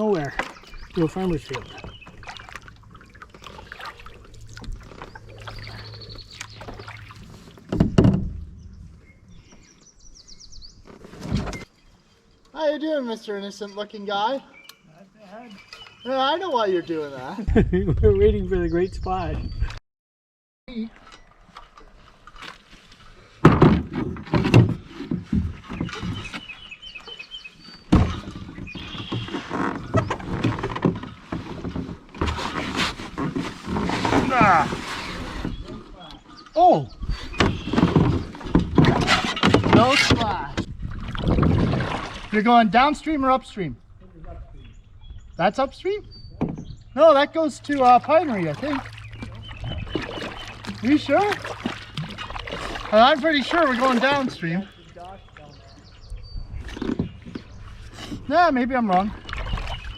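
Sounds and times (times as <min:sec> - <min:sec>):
paddle splashes: 0:00.0 - 0:08.5, 0:20.9 - 0:36.4, 0:37.1 - 0:42.4, 0:47.6 - 0:59.9
knocks against canoe hull: 0:07.7 - 0:08.5, 0:23.4 - 0:26.5, 0:27.9 - 0:34.6
scraping clatter: 0:29.1 - 0:35.6.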